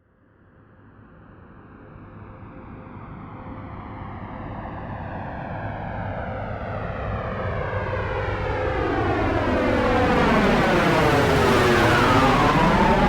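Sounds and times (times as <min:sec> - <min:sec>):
airplane engine approaching: 0:06.6 - 0:13.0.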